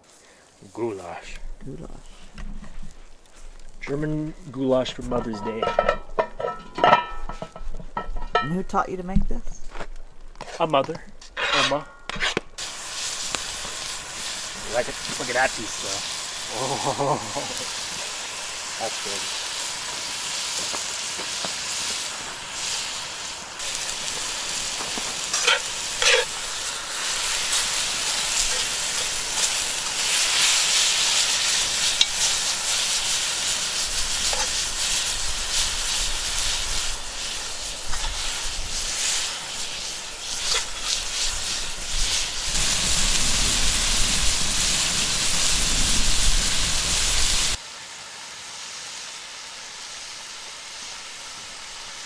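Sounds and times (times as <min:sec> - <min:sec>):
meat sizzling in butter: 0:00.0 - 0:08.4, 0:12.1 - 0:52.0.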